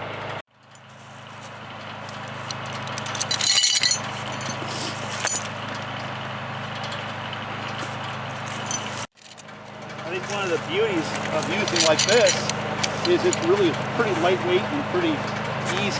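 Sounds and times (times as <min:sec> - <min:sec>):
tractor engine running: 0:00.0 - 0:15.9
metal clinks and rattles: 0:00.6 - 0:15.9.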